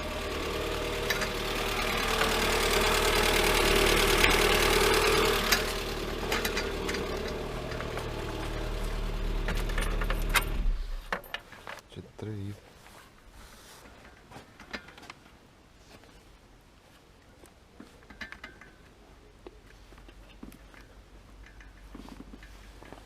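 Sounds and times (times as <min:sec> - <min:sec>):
car engine idling: 0:00.0 - 0:11.1.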